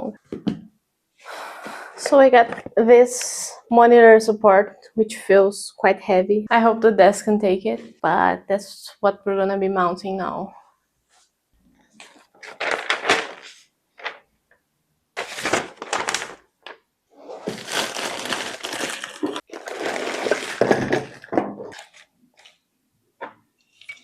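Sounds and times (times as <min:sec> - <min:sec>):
packaging crinkling and rustling: 0:12.0 - 0:14.2, 0:15.2 - 0:22.6.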